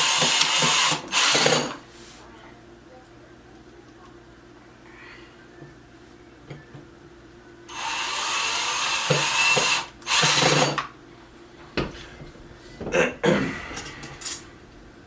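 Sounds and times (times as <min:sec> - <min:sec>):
cordless drill driving screw: 0:00.0 - 0:01.7, 0:07.7 - 0:10.8.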